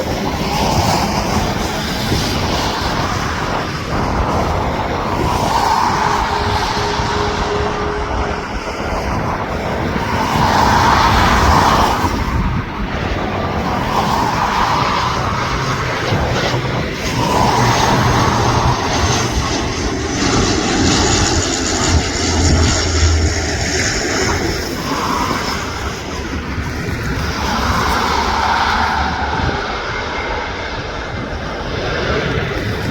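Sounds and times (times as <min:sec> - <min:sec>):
airliner engines running: 0:00.0 - 0:32.9
wind buffeting microphone: 0:00.0 - 0:32.9
thin high steady whine: 0:04.5 - 0:10.9, 0:17.0 - 0:26.1.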